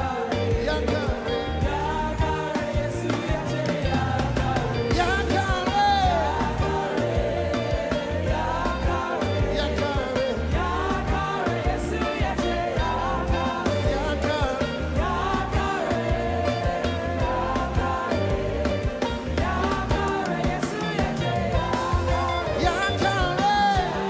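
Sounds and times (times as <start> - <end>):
band playing fast dance beat: 0.0 - 24.0
voices singing: 0.0 - 24.0.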